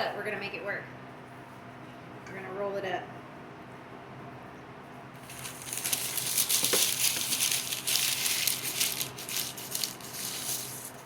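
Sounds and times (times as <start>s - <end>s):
dough crinkling and rustling: 5.2s - 11.0s.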